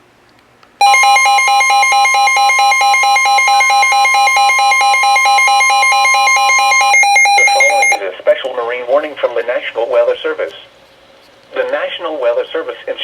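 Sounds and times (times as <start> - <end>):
pulsing alarm beep: 0.8 - 8.0
steady high tone: 0.8 - 8.0.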